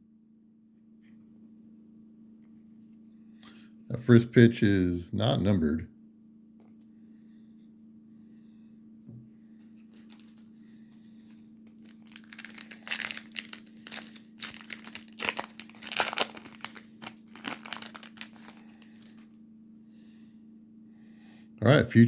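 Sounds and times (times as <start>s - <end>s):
steady low hum: 0.0s - 22.0s
foil wrapper tearing and crinkling: 10.0s - 10.4s, 11.7s - 19.3s.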